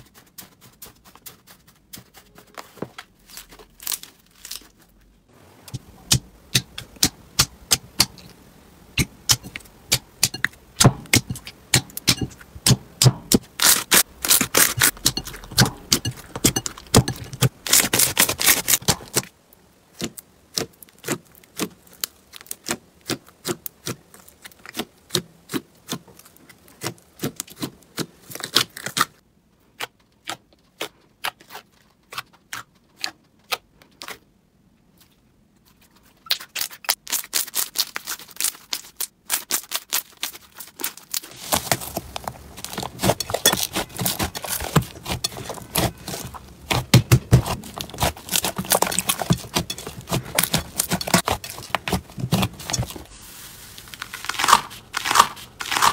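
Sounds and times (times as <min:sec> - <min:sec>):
slime crackling when squeezed: 0:53.8 - 0:55.9.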